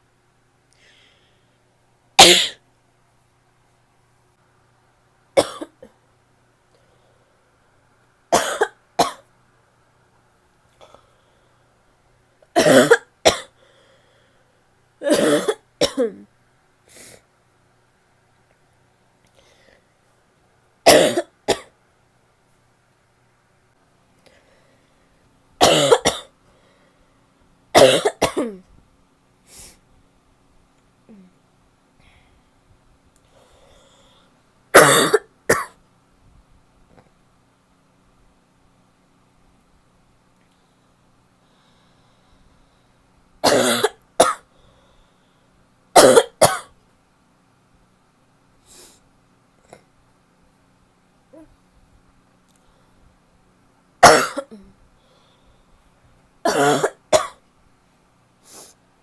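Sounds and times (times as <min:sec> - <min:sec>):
faint breath: 0:00.7 - 0:01.7, 0:06.7 - 0:07.7, 0:10.8 - 0:11.9, 0:13.6 - 0:14.8, 0:19.2 - 0:20.2, 0:24.2 - 0:25.2, 0:26.4 - 0:27.3, 0:29.4 - 0:29.9, 0:32.0 - 0:32.6, 0:33.2 - 0:34.4, 0:40.5 - 0:43.1, 0:44.4 - 0:45.6, 0:52.5 - 0:53.2, 0:54.9 - 0:55.9
woman coughing: 0:02.2 - 0:02.6, 0:05.4 - 0:05.9, 0:08.4 - 0:09.2, 0:12.6 - 0:13.5, 0:15.0 - 0:16.3, 0:20.9 - 0:21.7, 0:25.6 - 0:26.3, 0:27.8 - 0:28.6, 0:34.8 - 0:35.8, 0:43.4 - 0:44.4, 0:46.0 - 0:46.7, 0:54.0 - 0:54.7, 0:56.5 - 0:57.4.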